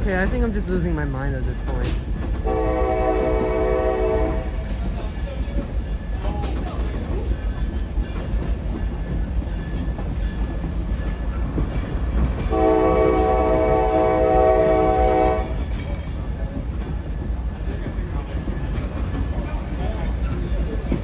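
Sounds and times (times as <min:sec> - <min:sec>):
diesel locomotive rumble: 0:00.0 - 0:21.0
train air horn blast: 0:02.4 - 0:04.6, 0:12.5 - 0:15.6.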